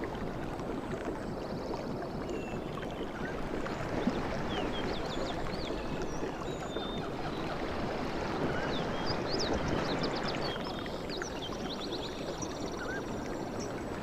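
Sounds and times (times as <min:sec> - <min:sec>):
sea waves washing on a beach: 0:00.0 - 0:14.0.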